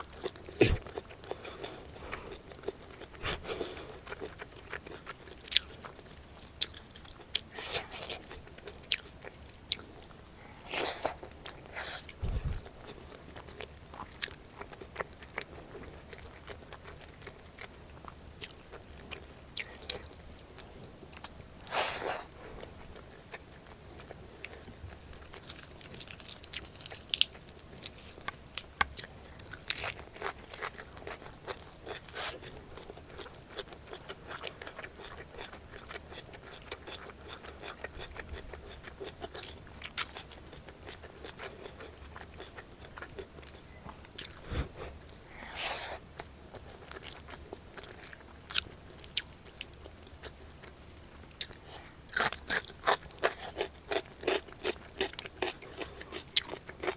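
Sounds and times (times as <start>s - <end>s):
person chewing food: 0.0s - 56.9s.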